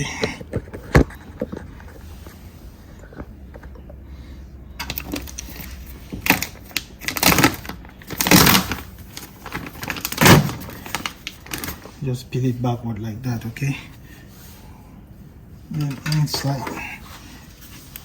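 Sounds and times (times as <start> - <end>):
plastic sheet crinkling: 5.0 - 12.0.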